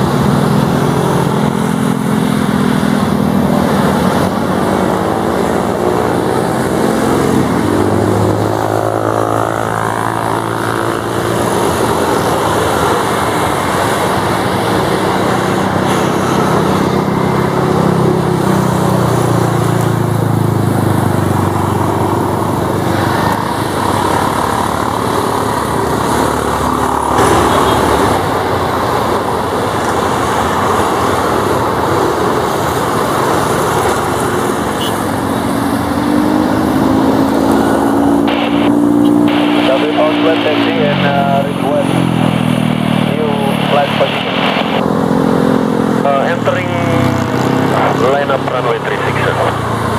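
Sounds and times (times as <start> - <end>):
turboprop propeller drone: 0.0 - 49.9.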